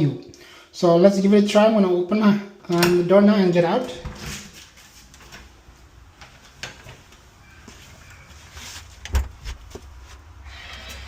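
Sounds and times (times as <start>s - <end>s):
door closing thump: 9.0s - 9.6s.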